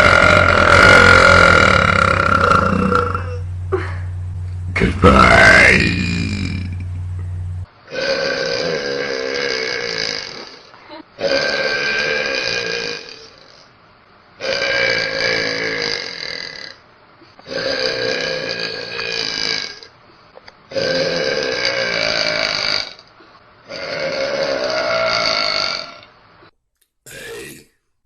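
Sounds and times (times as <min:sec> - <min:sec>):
woman burping loudly: 0:00.0 - 0:04.1, 0:17.4 - 0:19.9, 0:23.7 - 0:26.0.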